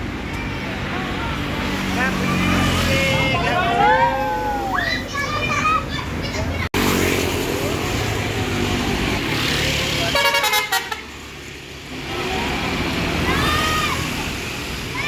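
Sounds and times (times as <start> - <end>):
bus engine rumble: 0.0 - 15.0
multi-tone bus horn: 2.8 - 3.6, 10.1 - 11.1.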